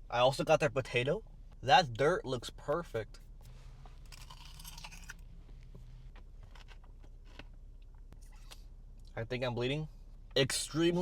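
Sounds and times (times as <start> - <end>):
crunching and chewing: 3.9 - 8.7.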